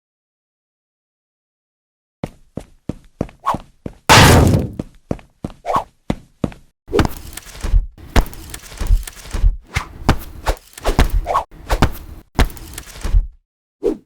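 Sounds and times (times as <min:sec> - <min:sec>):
thuds and knocks: 0:04.1 - 0:04.8.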